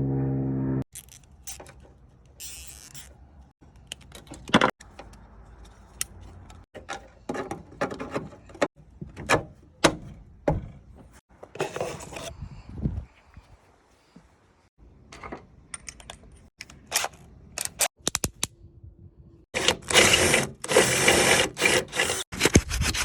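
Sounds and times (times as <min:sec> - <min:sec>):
hands handling parts and tools: 0:00.9 - 0:09.2.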